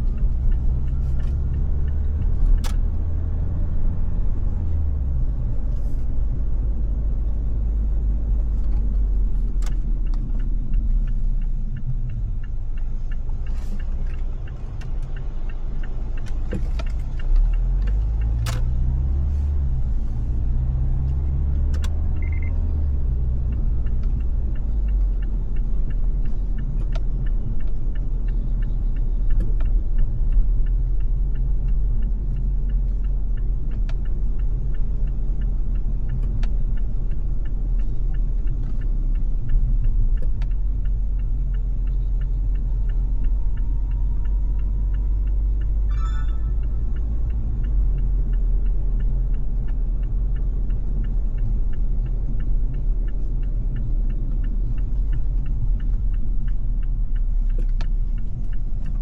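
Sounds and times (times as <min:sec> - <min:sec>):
car engine and road noise: 0:00.0 - 0:59.0
brief high-pitched sound: 0:45.9 - 0:46.8.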